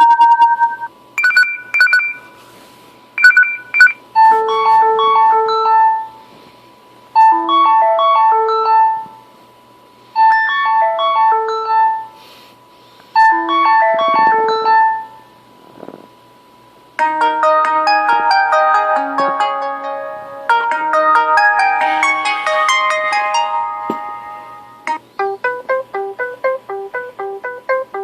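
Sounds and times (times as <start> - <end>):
short ringtone melody: 0.0 - 2.3, 3.2 - 6.1, 7.2 - 9.0, 10.2 - 12.1, 13.2 - 15.2, 17.0 - 28.0
busier ringtone with chords: 0.0 - 2.4, 3.2 - 6.3, 7.1 - 12.2, 13.1 - 15.5, 17.0 - 28.0.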